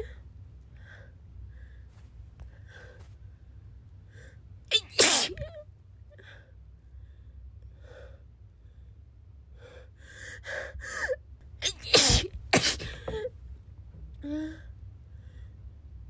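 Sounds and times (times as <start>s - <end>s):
person sneezing loudly: 4.7s - 5.4s, 11.6s - 13.1s.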